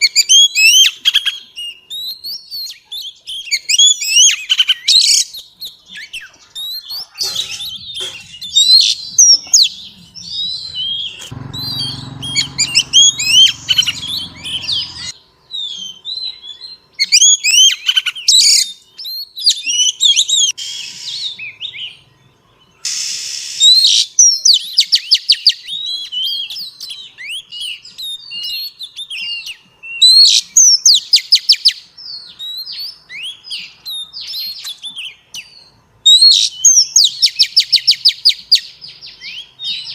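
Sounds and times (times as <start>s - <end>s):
low rumble: 8.4s - 15.1s.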